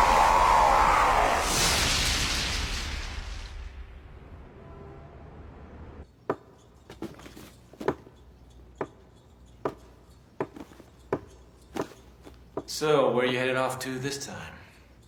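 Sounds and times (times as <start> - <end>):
footsteps tapping: 6.3 - 8.2, 8.8 - 13.4.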